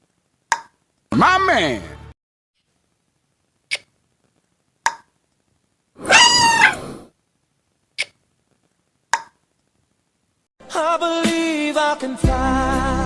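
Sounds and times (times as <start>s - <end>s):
high-pitched meow-like call: 6.0s - 7.0s.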